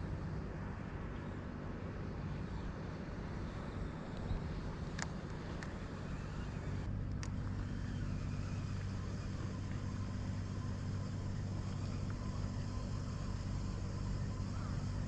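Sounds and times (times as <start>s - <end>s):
motor humming: 0.0s - 15.0s
light clicks: 3.6s - 10.1s.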